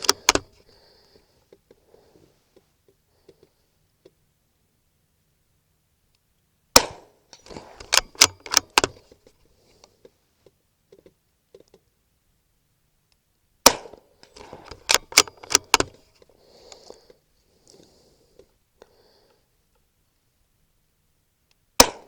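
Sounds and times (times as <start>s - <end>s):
rifle bolt metallic clicks: 0.0s - 0.6s, 6.8s - 9.2s, 13.7s - 16.0s
rifle shots: 6.8s - 8.9s, 13.6s - 14.0s, 21.8s - 22.0s.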